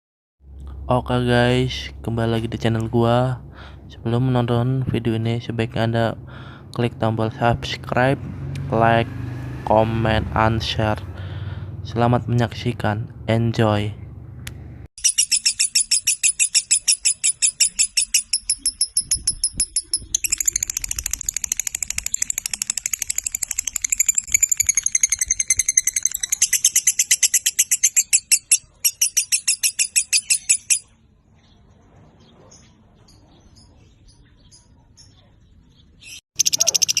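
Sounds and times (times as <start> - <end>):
lovebird chirping: 15.0 - 37.0.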